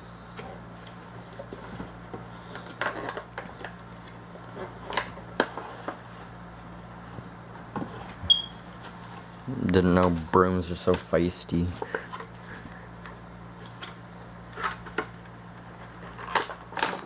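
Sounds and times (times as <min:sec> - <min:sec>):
steady low hum: 0:00.0 - 0:16.6
plastic packaging clicks and crinkles: 0:00.8 - 0:06.3, 0:14.6 - 0:17.0.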